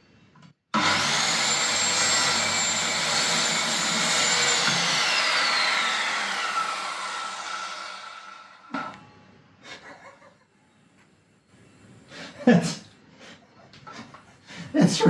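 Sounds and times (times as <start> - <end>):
circular saw cutting wood: 0.8 - 8.7.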